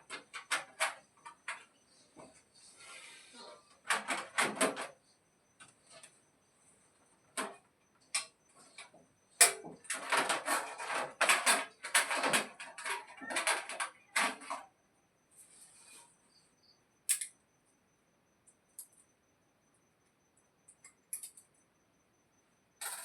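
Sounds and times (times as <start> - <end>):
hard parts clicking and rattling: 8.2 - 14.6.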